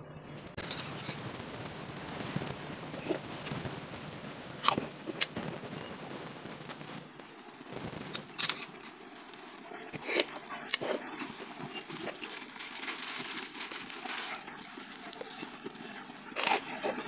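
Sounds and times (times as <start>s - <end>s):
chewing and mouth noises: 9.6s - 17.0s.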